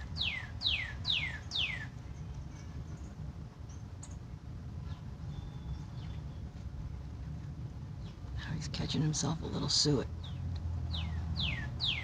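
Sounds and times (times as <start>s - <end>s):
songbird whistling: 0.0s - 2.0s, 4.8s - 6.5s, 10.2s - 12.0s
low background rumble: 0.0s - 12.0s.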